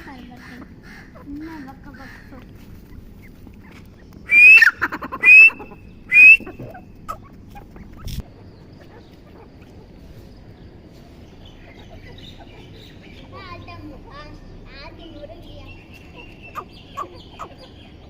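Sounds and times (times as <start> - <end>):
partridge calling shrill notes: 4.2 - 7.3.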